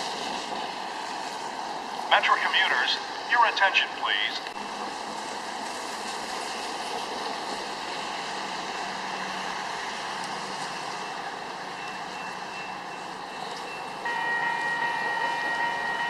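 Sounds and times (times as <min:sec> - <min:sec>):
steady rushing noise: 0:00.0 - 0:10.0.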